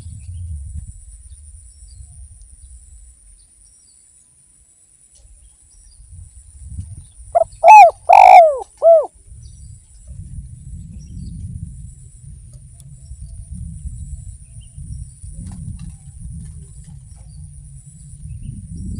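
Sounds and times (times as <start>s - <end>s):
faint low rumble: 0.0s - 3.7s
dove cooing: 7.4s - 9.1s.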